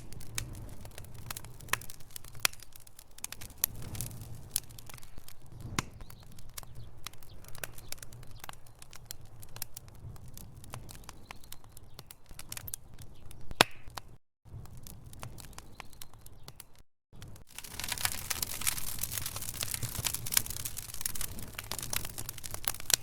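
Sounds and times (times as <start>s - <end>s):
low rumble of flame: 0.0s - 23.0s
wood fire crackling and popping: 0.0s - 23.0s.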